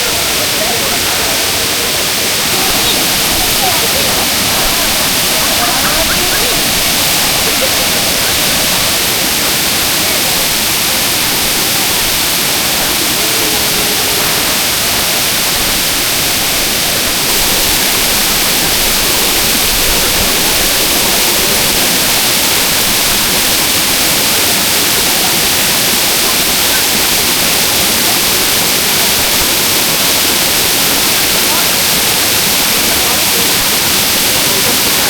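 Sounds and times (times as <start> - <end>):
waterfall rushing: 0.0 - 35.0.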